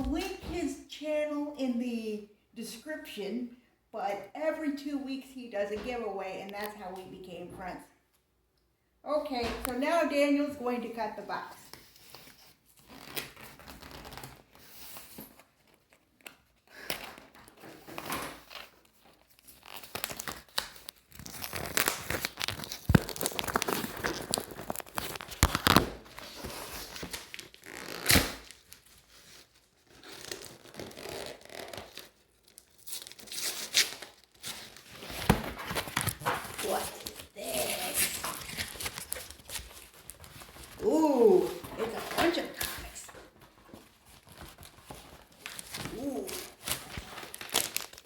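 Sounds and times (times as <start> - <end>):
cardboard and tape tearing: 11.7 - 16.4, 17.1 - 48.0
packing material crinkling: 12.0 - 48.0.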